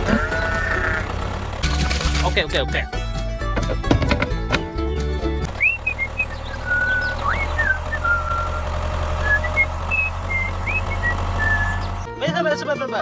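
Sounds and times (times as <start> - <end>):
low engine-like rumble: 5.4 - 12.1
person whistling a tune: 5.6 - 8.6, 9.2 - 11.9.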